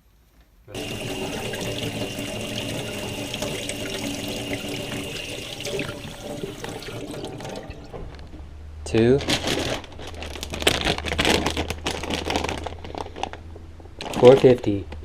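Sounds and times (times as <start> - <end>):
tap water running into sink: 0.7 - 8.1.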